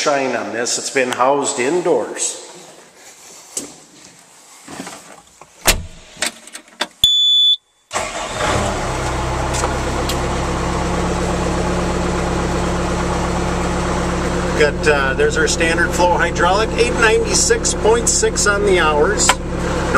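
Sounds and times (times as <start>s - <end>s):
short high beep: 7.0s - 7.8s
diesel engine starting and idling: 7.9s - 19.9s.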